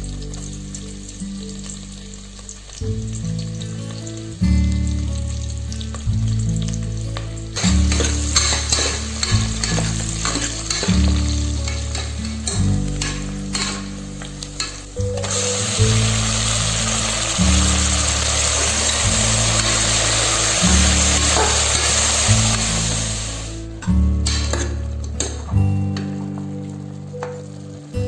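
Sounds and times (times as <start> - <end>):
meat sizzling in hot oil: 0.0 - 24.6
background music with low notes: 0.0 - 28.0
stirring scrapes in a pan: 7.5 - 14.0.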